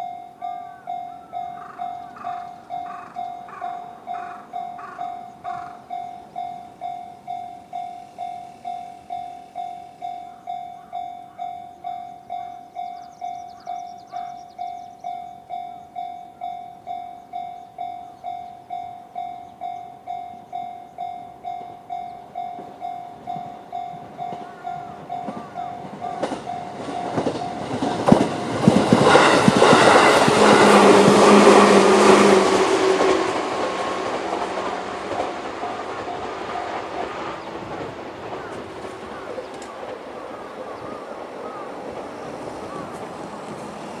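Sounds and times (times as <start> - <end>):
level crossing alarm ringing: 0.0 - 37.8
train wheels clattering: 22.3 - 44.0.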